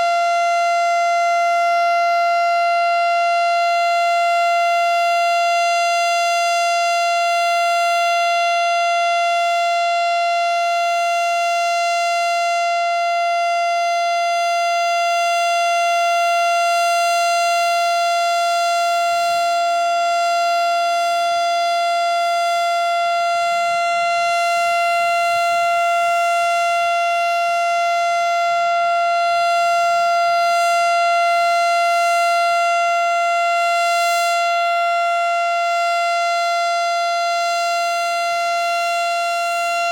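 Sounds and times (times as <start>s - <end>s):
mechanical warning siren steady tone: 0.0s - 39.9s.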